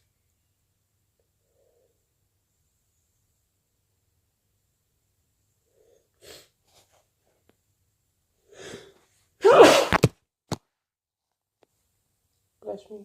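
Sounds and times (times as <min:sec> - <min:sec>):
person sneezing loudly: 0:09.4 - 0:10.1.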